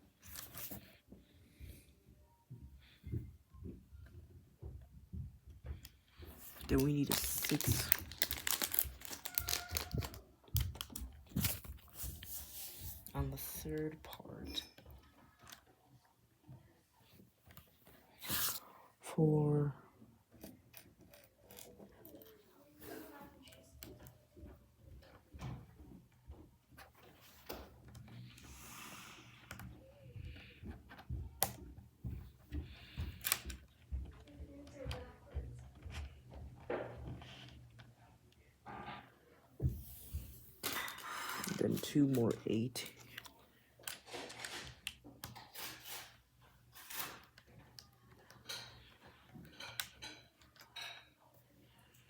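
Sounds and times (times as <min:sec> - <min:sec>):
rustle of plastic pieces: 0:06.4 - 0:13.0, 0:40.6 - 0:43.0.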